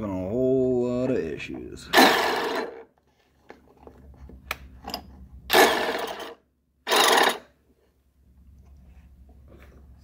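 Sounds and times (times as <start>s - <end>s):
abrasive wheel grinding metal: 1.9s - 2.8s, 5.5s - 7.4s.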